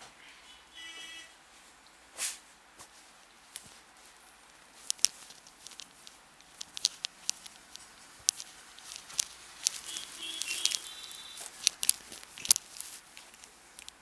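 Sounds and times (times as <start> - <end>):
soft brushing: 1.5 - 14.0
hands clicking and tapping: 4.8 - 14.0.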